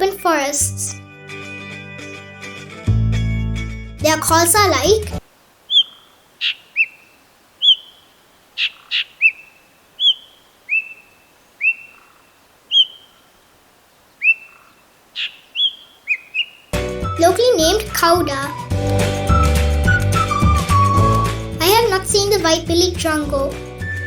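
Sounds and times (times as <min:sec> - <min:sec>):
bird whistled notes: 0:05.7 - 0:07.0, 0:07.6 - 0:08.0, 0:08.6 - 0:12.0, 0:12.7 - 0:13.2, 0:15.2 - 0:17.3, 0:18.4 - 0:21.5, 0:23.8 - 0:24.0
sharp bird clicking notes: 0:05.7 - 0:13.2, 0:14.2 - 0:16.8.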